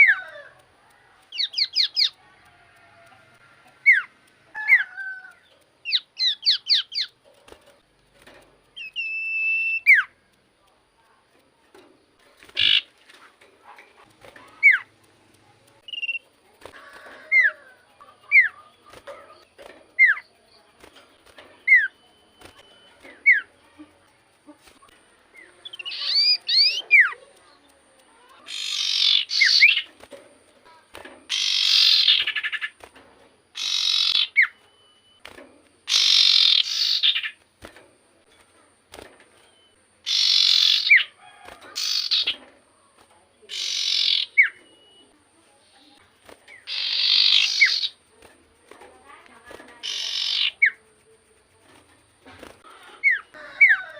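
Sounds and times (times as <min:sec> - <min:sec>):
bird harsh rasping chatters: 0:01.3 - 0:02.2, 0:04.7 - 0:07.2, 0:12.4 - 0:15.0, 0:24.6 - 0:27.5, 0:28.1 - 0:30.0, 0:30.7 - 0:32.8, 0:33.5 - 0:34.6, 0:35.8 - 0:37.4, 0:40.0 - 0:41.2, 0:41.8 - 0:42.4, 0:43.5 - 0:44.6, 0:46.5 - 0:48.1, 0:49.3 - 0:53.9.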